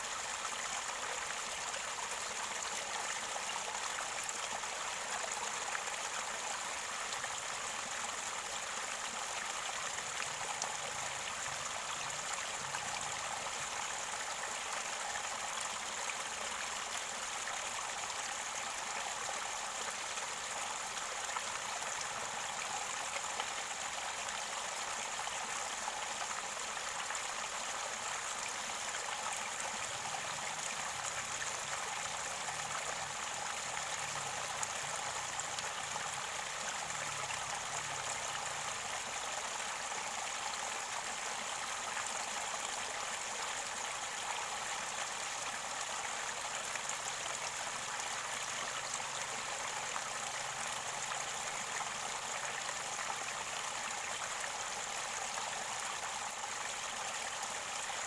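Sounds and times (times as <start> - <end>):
river water rushing and gurgling: 28.2 - 55.1.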